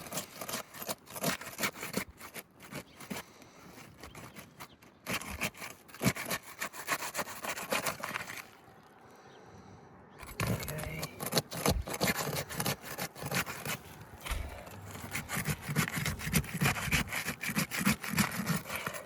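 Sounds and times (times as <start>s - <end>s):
shingles scraping and clicking: 0.0s - 8.7s, 10.2s - 19.0s.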